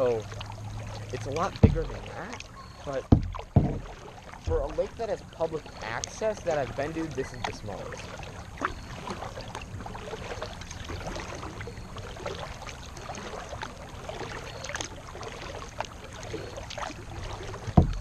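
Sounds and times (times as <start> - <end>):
paddle splashing in water: 0.0 - 18.0
water dripping: 0.0 - 18.0
light clicks and knocks: 1.2 - 5.0.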